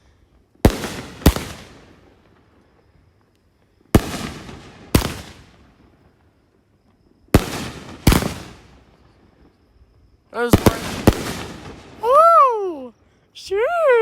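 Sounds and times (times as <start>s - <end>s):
fireworks bangs: 0.6s - 2.5s, 3.8s - 6.2s, 7.3s - 9.6s, 10.4s - 12.6s.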